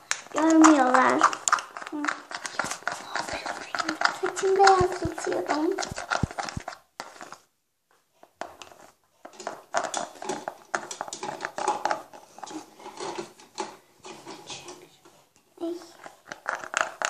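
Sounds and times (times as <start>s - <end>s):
slime squelching: 0.0s - 7.5s.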